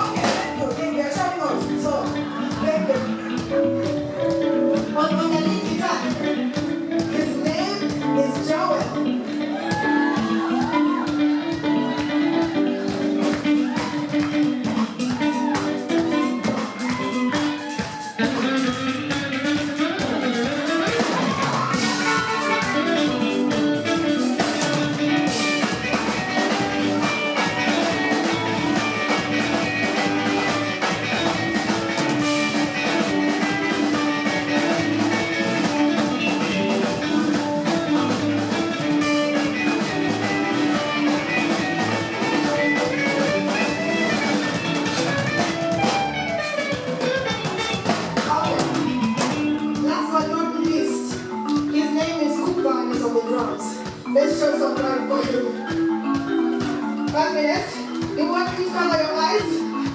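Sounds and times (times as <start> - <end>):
live band playing soul music: 0.0 - 59.9
drum hits: 12.8 - 49.8.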